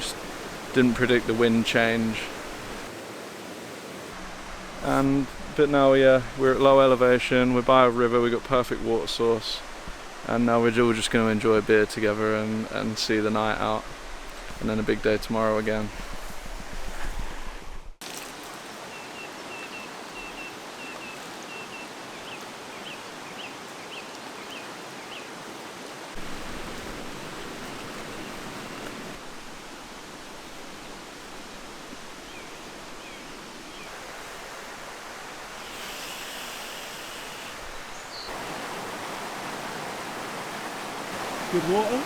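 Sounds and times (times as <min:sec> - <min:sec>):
river water rushing: 0:00.0 - 0:07.6, 0:18.0 - 0:42.0.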